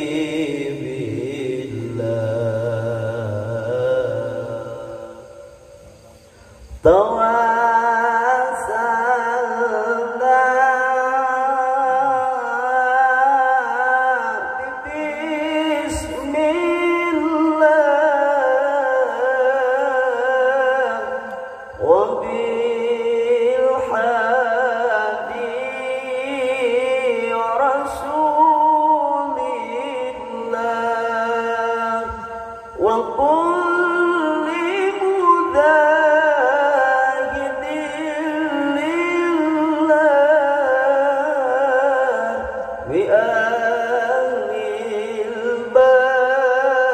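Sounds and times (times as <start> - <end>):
man chanting devotional recitation: 0.0 - 46.9.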